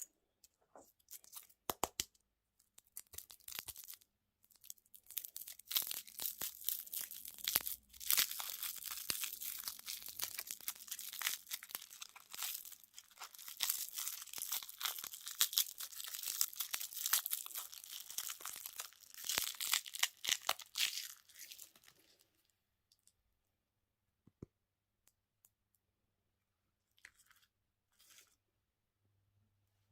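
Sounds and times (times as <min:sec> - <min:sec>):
plastic wrapper crinkling: 0:02.6 - 0:22.2.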